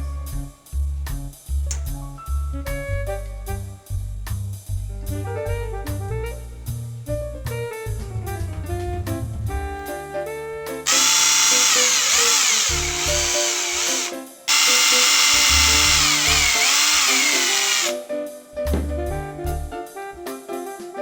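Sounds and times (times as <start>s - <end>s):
background music: 0.0s - 21.0s
electric drill whining: 10.9s - 18.0s.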